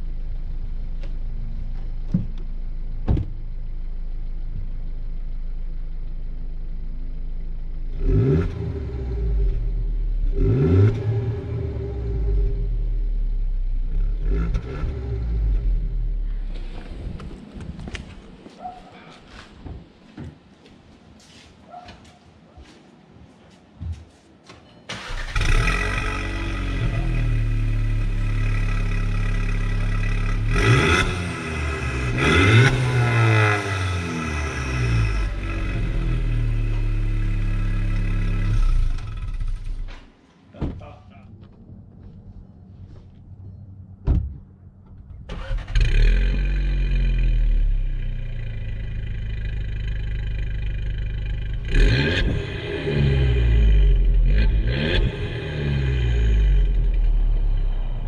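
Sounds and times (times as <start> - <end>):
car engine starting and idling: 0.0 - 18.4, 24.9 - 40.2, 41.4 - 58.0
engine revving: 7.9 - 13.0, 13.9 - 16.9, 24.9 - 40.1, 45.3 - 58.0.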